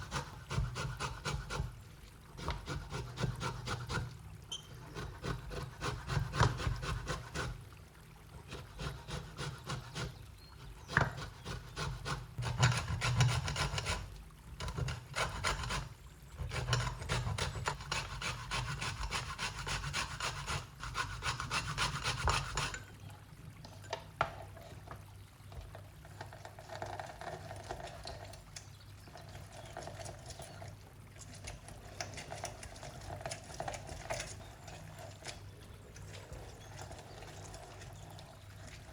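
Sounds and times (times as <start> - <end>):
food scraped on hand grater: 4.8 - 7.6, 8.4 - 22.8.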